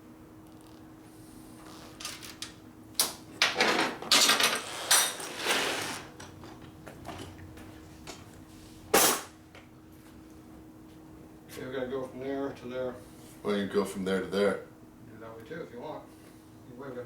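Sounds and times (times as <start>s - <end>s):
objects scraping and clattering: 3.5s - 6.3s.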